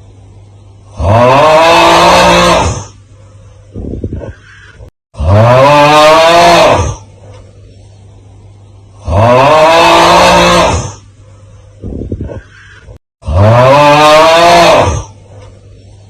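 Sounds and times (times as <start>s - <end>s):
strained drawn-out cry: 0.9s - 3.0s, 4.2s - 7.1s, 9.0s - 11.1s, 12.2s - 15.2s.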